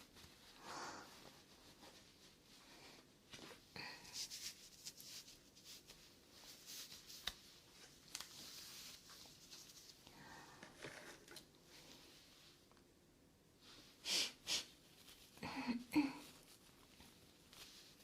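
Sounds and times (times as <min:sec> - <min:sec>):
breathy hiss: 0:13.7 - 0:14.8.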